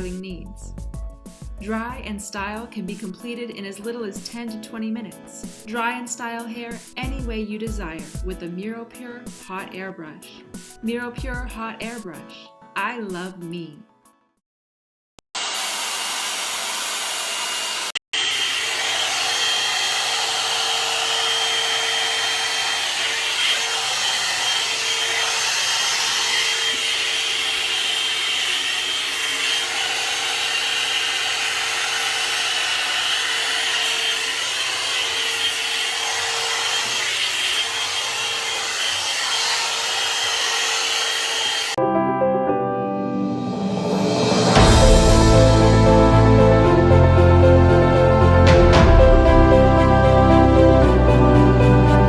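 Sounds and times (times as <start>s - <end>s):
hair dryer running: 15.4s - 41.8s.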